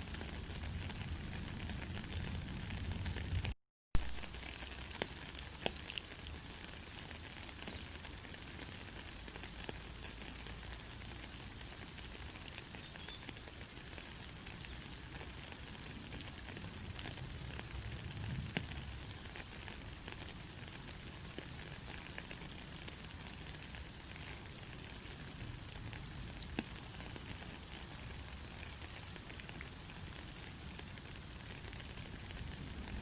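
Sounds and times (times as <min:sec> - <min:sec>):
faint crackles: 0:00.0 - 0:33.0.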